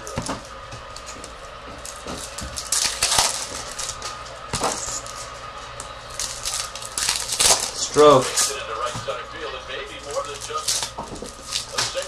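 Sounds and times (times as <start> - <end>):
card packs crinkling and tearing: 0.0 - 12.0.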